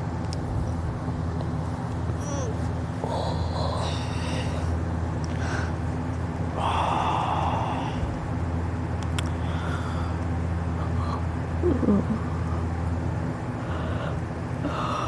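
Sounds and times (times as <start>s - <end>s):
person snoring: 2.2s - 4.7s, 6.6s - 8.1s.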